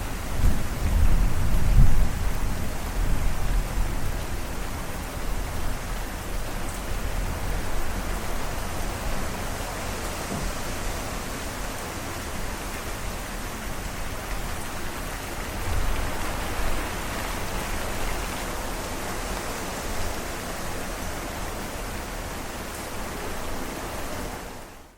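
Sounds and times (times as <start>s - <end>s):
low thunder rumbles: 0.0s - 5.7s
heavy rain hissing: 0.0s - 24.9s.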